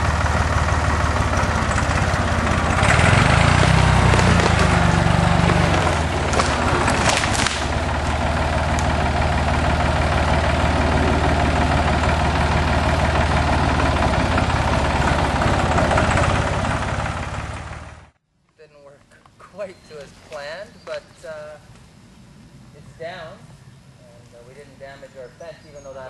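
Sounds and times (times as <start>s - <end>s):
tractor engine running: 0.0s - 18.2s
sharp cracks: 1.4s - 9.2s.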